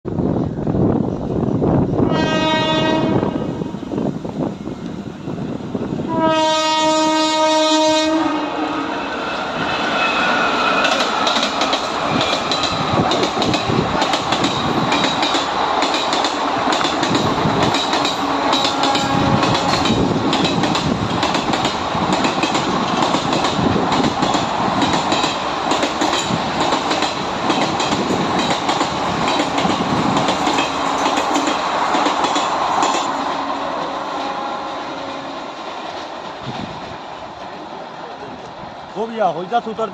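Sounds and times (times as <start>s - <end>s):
train horn blast: 2.0s - 3.8s, 6.1s - 9.1s, 18.2s - 20.2s, 33.2s - 35.6s
train wheels clattering over rails: 9.4s - 39.0s.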